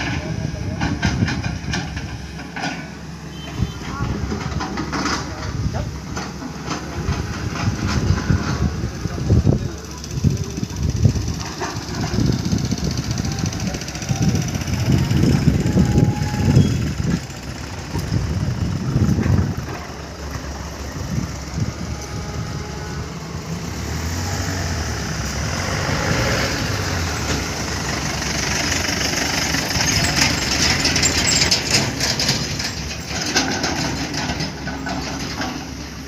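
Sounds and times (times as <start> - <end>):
rushing noise: 0.0 - 35.3
vehicle engine running: 0.0 - 36.0.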